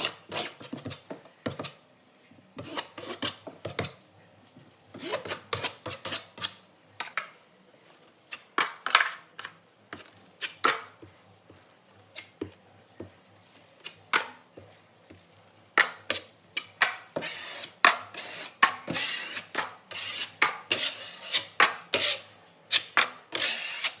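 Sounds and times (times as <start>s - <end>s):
hand tools scraping drywall: 0.0s - 1.0s, 5.0s - 6.5s, 16.1s - 24.0s.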